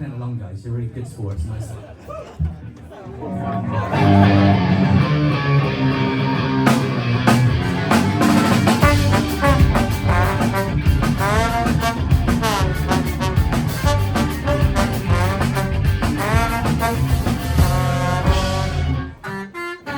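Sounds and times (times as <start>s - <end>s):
bass guitar: 3.3s - 19.5s
ska band playing live: 3.7s - 19.9s
drum kit beat: 4.0s - 19.6s.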